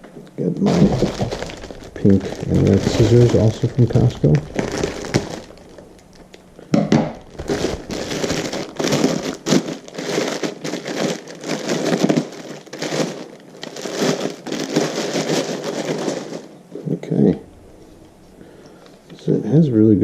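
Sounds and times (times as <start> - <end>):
plastic packaging crinkling: 0.0 - 19.2
scissors cutting plastic: 7.5 - 16.4.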